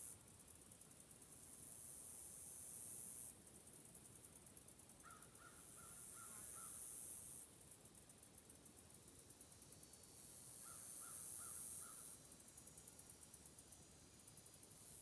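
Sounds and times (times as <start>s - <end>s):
distant crow cawing: 5.0s - 5.6s.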